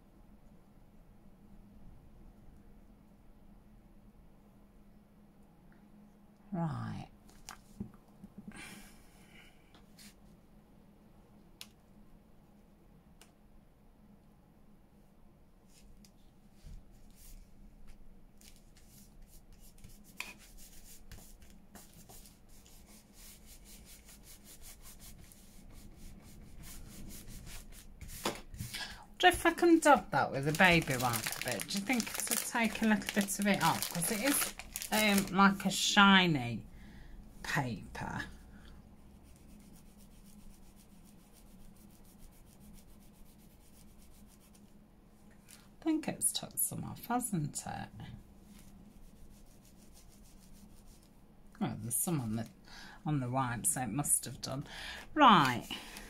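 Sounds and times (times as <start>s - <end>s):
faint rubbing on paper: 9.9s - 10.4s, 15.6s - 35.7s, 37.5s - 44.8s, 48.2s - 51.2s.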